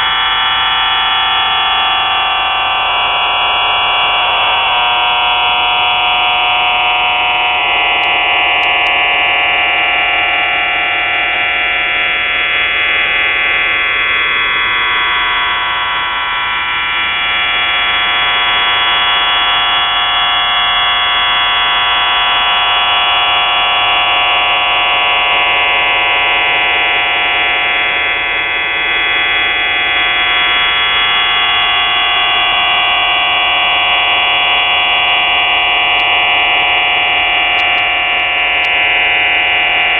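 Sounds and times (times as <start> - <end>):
radio signal buzz: 35.1 - 39.9.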